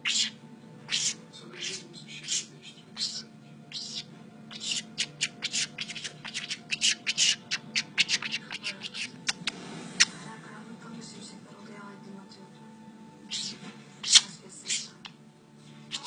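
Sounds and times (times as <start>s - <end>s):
small bird sneezing: 0.0s - 10.1s, 13.3s - 14.9s.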